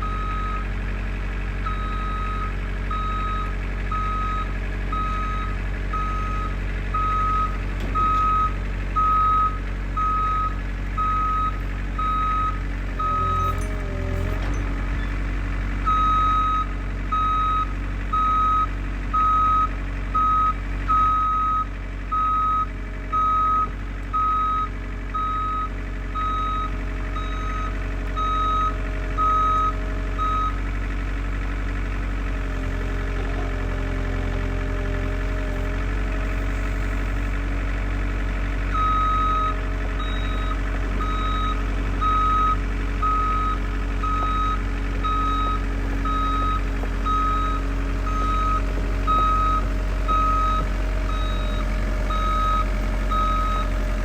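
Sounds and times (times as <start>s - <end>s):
vehicle backup alarm beeping: 0.0s - 0.7s, 1.6s - 15.2s, 15.8s - 30.6s, 33.9s - 37.4s, 38.6s - 54.0s
diesel engine running: 0.0s - 54.0s.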